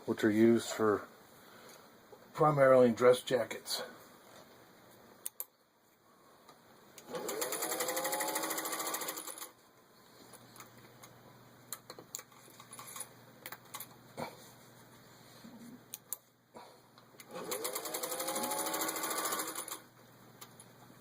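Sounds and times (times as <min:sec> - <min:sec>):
rapid stitching clatter: 0:07.1 - 0:09.5, 0:17.3 - 0:19.8
sewing machine motor whine: 0:07.1 - 0:09.5, 0:17.3 - 0:19.8.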